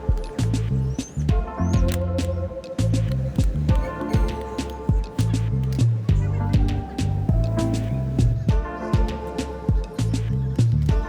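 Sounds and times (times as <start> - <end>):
stepping bass notes: 0.0 - 11.0
deep kick drum hits: 6.1 - 7.5, 8.2 - 10.0.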